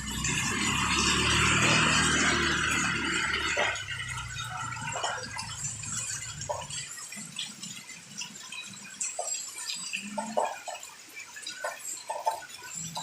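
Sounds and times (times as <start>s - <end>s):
drips and patters: 0.0s - 13.0s
rain falling: 0.0s - 13.0s.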